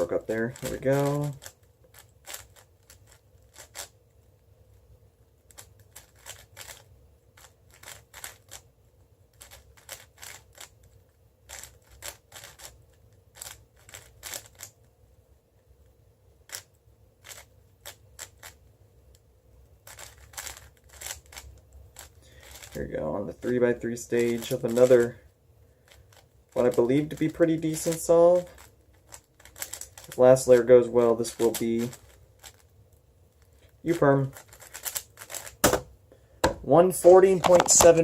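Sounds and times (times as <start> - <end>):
puzzle cube layers clicking: 0.0 - 4.0, 5.4 - 8.7, 9.3 - 14.8, 16.5 - 18.7, 19.8 - 22.8, 24.2 - 25.1, 25.9 - 30.6, 31.3 - 32.6, 33.9 - 35.8.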